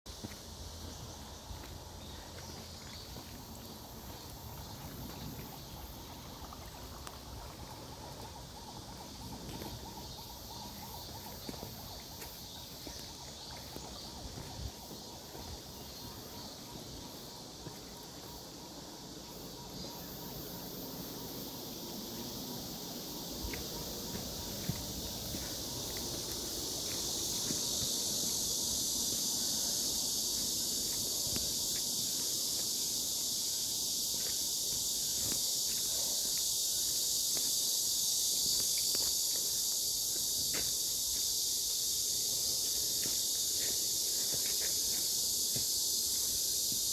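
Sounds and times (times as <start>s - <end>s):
high hiss: 19.3s - 46.9s.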